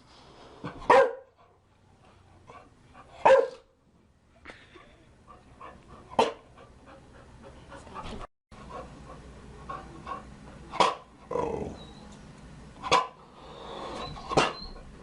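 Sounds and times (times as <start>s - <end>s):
dog barking: 0.9s - 1.4s, 3.2s - 3.6s, 6.2s - 6.4s, 10.8s - 11.1s, 12.9s - 13.2s.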